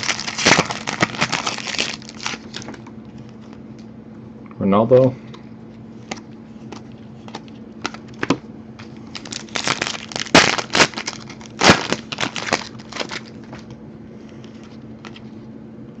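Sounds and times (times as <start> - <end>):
plastic packaging crinkling: 0.0 - 2.8, 7.2 - 13.7
faint steady hum: 0.0 - 16.0.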